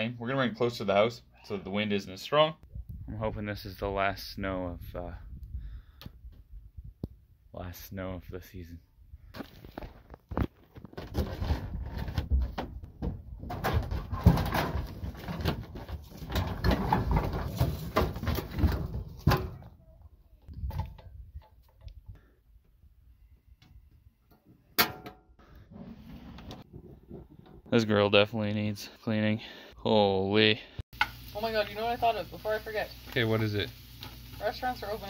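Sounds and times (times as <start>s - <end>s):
metal grill clattering and scraping: 13.5s - 19.6s.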